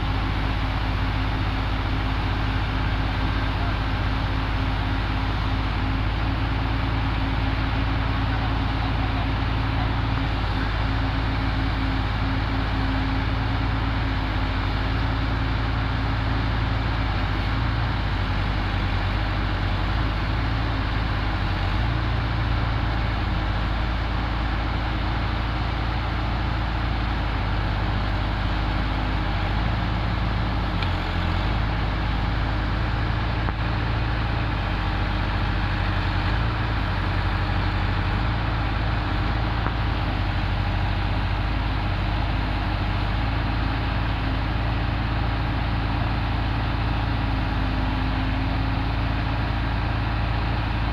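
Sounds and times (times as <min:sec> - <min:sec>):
heavy diesel machinery running: 0:00.0 - 0:50.9.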